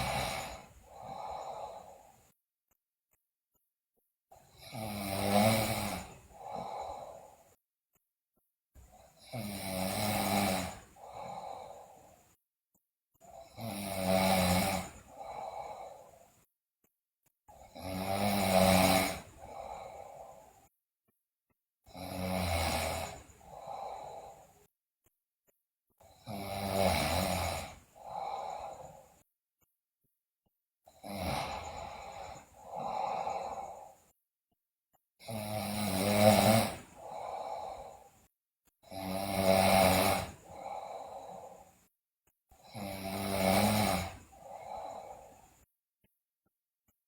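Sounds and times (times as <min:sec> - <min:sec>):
girl snoring loudly: 0:00.0 - 0:02.2, 0:04.4 - 0:07.6, 0:09.0 - 0:12.2, 0:13.3 - 0:16.4, 0:17.5 - 0:20.7, 0:21.9 - 0:24.7, 0:26.0 - 0:29.2, 0:30.9 - 0:34.2, 0:35.2 - 0:38.2, 0:38.8 - 0:41.8, 0:42.6 - 0:45.5.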